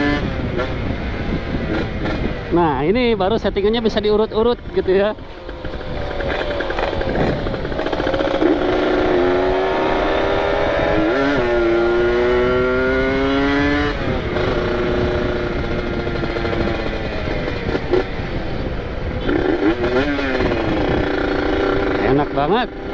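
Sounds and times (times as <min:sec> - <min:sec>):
two-stroke engine revving: 0:00.0 - 0:22.9.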